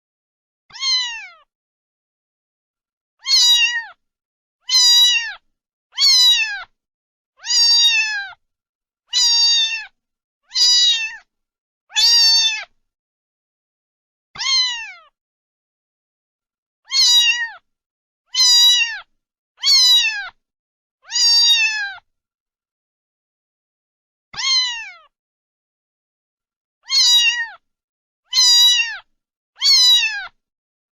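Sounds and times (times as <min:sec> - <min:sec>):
cat meowing: 0:00.7 - 0:01.5, 0:03.2 - 0:04.0, 0:04.6 - 0:05.4, 0:06.0 - 0:06.7, 0:07.4 - 0:08.4, 0:09.1 - 0:11.3, 0:11.9 - 0:12.7, 0:14.4 - 0:15.2, 0:16.9 - 0:17.6, 0:18.3 - 0:20.4, 0:21.0 - 0:22.0, 0:24.4 - 0:25.1, 0:26.8 - 0:27.6, 0:28.3 - 0:30.4.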